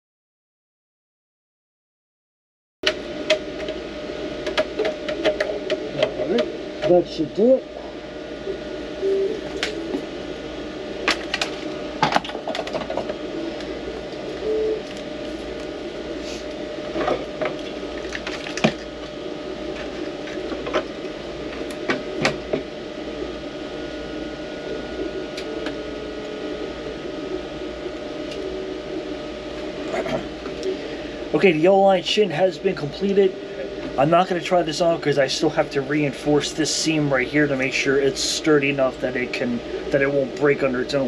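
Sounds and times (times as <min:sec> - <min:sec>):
steady mechanical hum: 0:02.8 - 0:41.0.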